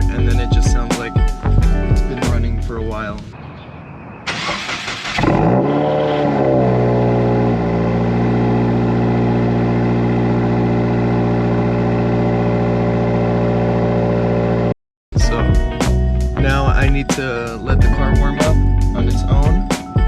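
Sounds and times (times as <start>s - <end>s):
engine starter cranking: 4.3s - 5.6s
car engine revving and idling: 4.6s - 14.8s.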